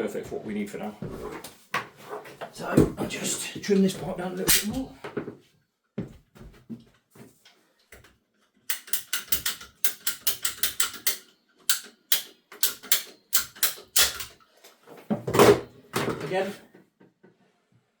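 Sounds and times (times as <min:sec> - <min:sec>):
pipe cutter clicking: 0:08.7 - 0:14.4.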